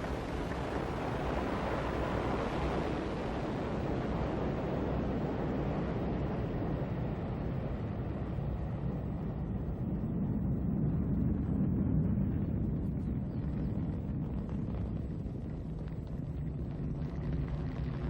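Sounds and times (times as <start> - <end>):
rocket engine rumble: 4.8 - 18.0.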